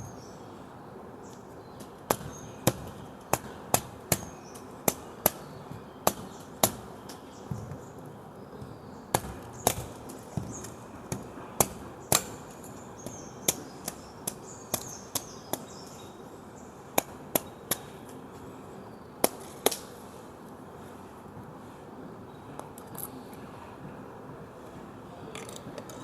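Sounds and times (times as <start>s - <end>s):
blade chopping coconut husk: 1.8s - 7.9s, 8.6s - 16.0s, 17.0s - 18.1s.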